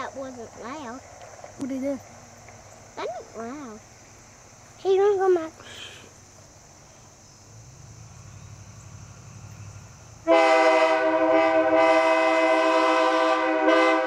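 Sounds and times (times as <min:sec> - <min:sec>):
loud train horn blast: 0:10.2 - 0:14.0.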